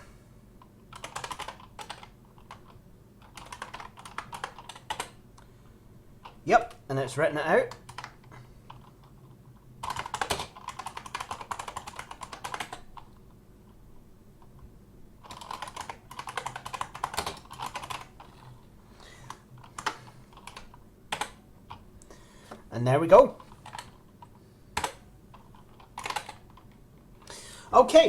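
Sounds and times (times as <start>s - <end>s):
typing on computer keyboard: 0.9s - 5.2s, 7.7s - 9.0s, 9.8s - 13.2s, 15.2s - 18.5s, 19.3s - 21.8s, 23.4s - 26.8s.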